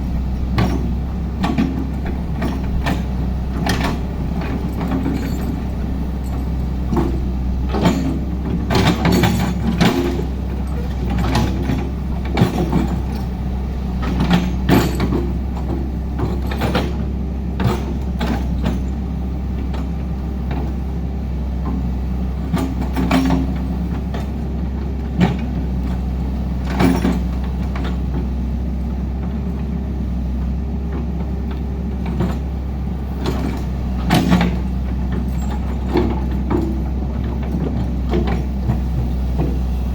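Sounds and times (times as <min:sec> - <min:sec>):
diesel machinery running: 0:00.0 - 0:39.9
metallic clanks and knocks: 0:00.4 - 0:19.0, 0:33.2 - 0:39.9.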